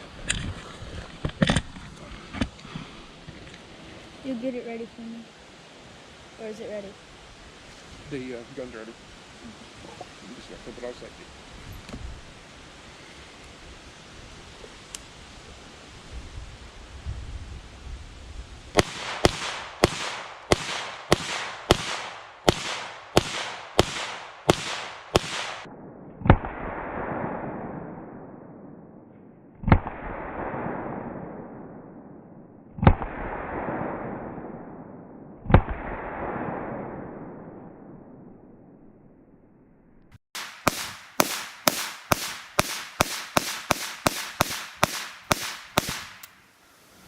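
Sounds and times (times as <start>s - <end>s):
pistol gunshots: 18.8s - 27.7s, 40.4s - 46.3s.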